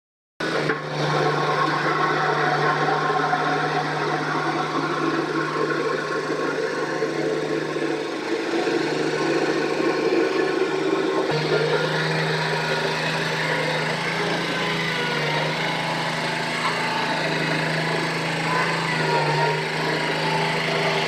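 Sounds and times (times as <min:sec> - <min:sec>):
road roller engine humming: 0:00.7 - 0:21.0.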